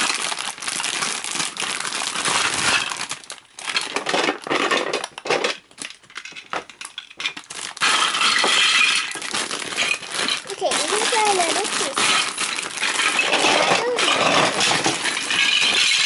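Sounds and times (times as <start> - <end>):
plastic bricks clattering: 0.0 - 16.0.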